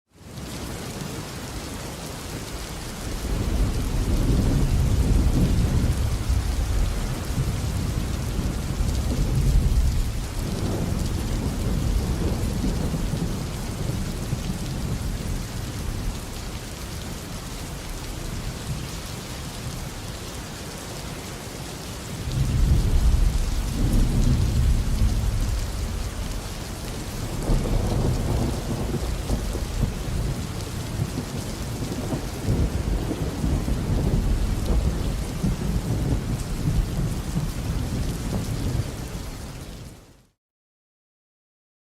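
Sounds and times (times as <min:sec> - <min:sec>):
heavy rain: 0:00.1 - 0:40.4
thunder rumbling: 0:03.0 - 0:18.8, 0:22.2 - 0:39.3.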